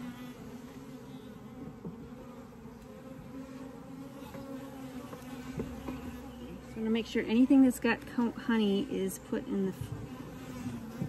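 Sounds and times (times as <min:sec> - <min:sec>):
honeybees buzzing: 0:00.0 - 0:11.0.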